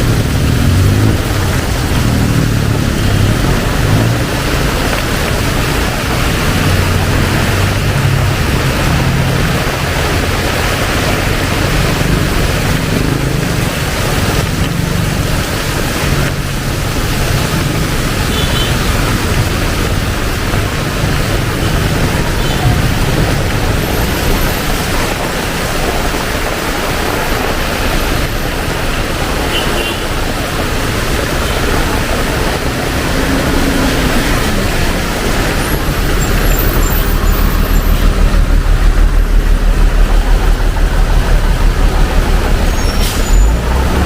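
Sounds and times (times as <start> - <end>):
heavy rain pouring: 0.0 - 44.0
low rumble: 30.7 - 44.0.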